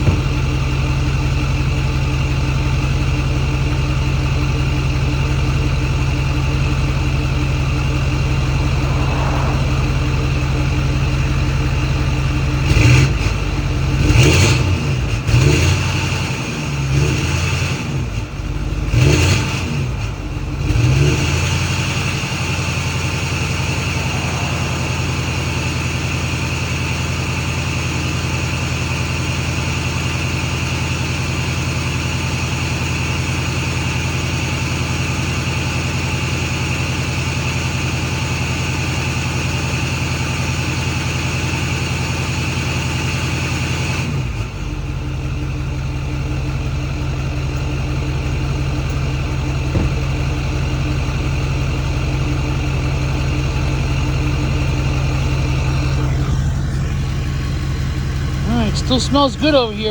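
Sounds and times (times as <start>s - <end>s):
diesel engine revving: 0.0s - 59.9s
high turbo whine: 0.0s - 59.9s.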